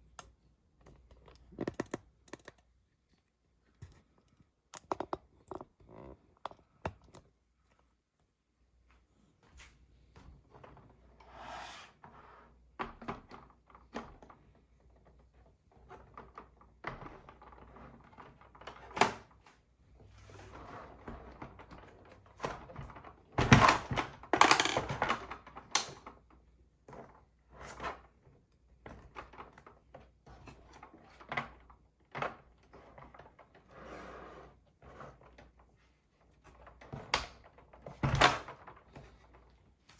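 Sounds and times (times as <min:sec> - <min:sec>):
plastic toy pieces clicking: 0:24.4 - 0:24.9.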